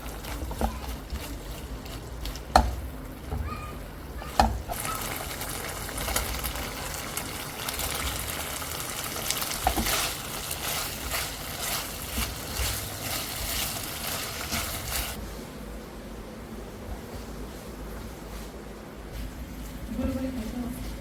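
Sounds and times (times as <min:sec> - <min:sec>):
food frying in hot oil: 0:00.0 - 0:03.3, 0:04.3 - 0:15.2.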